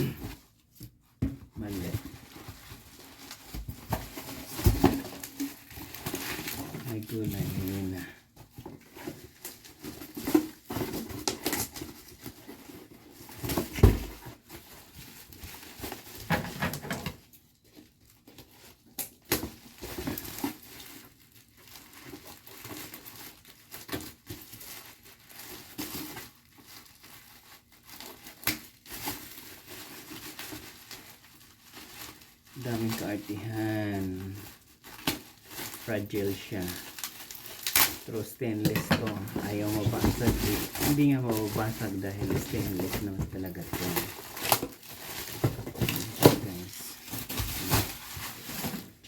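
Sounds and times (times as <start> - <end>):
packaging tearing and crinkling: 1.6 - 8.1, 18.3 - 49.0.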